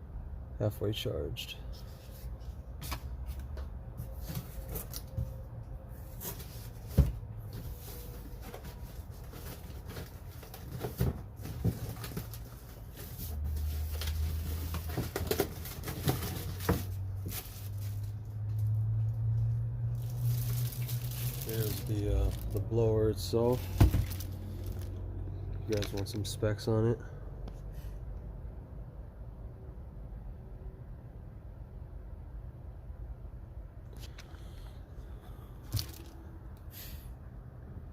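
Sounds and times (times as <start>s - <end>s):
cardboard and plastic packaging knocks: 23.6s - 24.3s.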